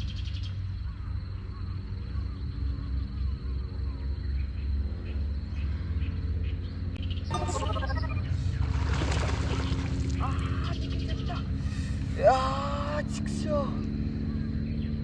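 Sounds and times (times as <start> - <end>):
faint chirps: 7.3 - 11.0.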